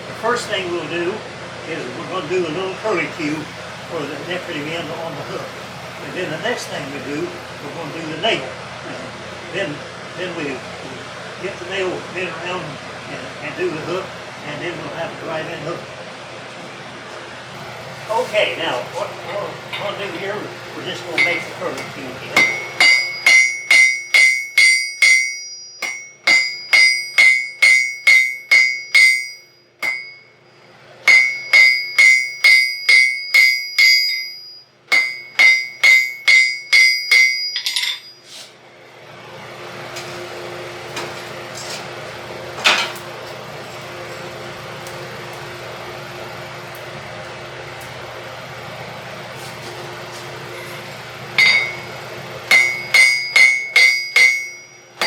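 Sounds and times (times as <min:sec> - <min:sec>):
steady rushing hum: 0:00.0 - 0:38.2, 0:39.0 - 0:55.0
hammer striking steel on an anvil: 0:19.3 - 0:20.3, 0:21.0 - 0:30.3, 0:31.0 - 0:38.4, 0:42.6 - 0:43.0, 0:51.4 - 0:55.0.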